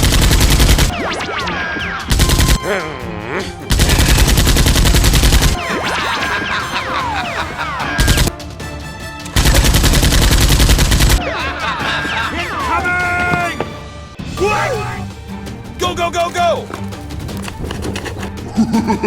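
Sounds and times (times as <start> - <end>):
automatic gunfire: 0.0 - 1.0, 2.1 - 2.6, 3.7 - 5.6, 8.0 - 8.3, 9.4 - 11.2.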